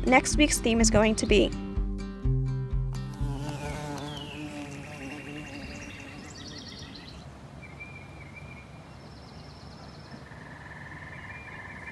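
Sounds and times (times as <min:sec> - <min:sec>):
low background hiss: 0:03.0 - 0:11.9
bird trills: 0:03.2 - 0:11.9.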